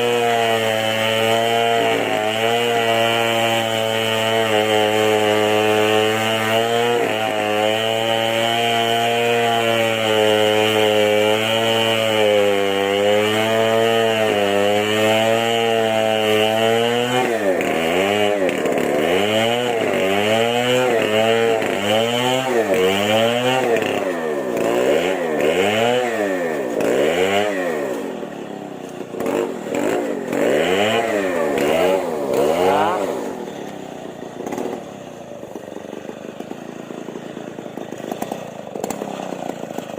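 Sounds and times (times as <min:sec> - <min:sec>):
chainsaw engine revving: 0:00.0 - 0:39.9.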